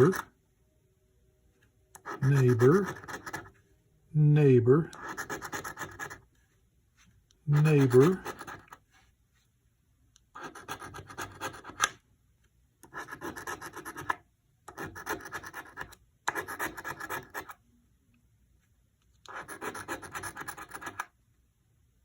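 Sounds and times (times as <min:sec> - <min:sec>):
scratching lottery ticket: 0:00.0 - 0:00.3, 0:02.0 - 0:03.5, 0:04.9 - 0:06.3, 0:07.5 - 0:08.9, 0:10.3 - 0:11.9, 0:12.8 - 0:17.6, 0:19.3 - 0:21.1.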